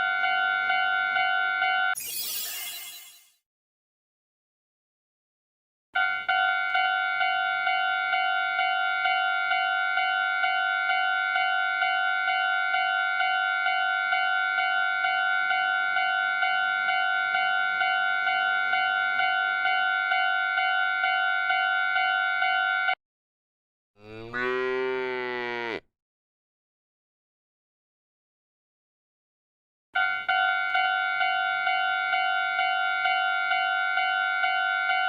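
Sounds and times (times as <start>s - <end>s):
electronic crossing warning bell: 6.8s - 22.8s, 30.0s - 35.0s.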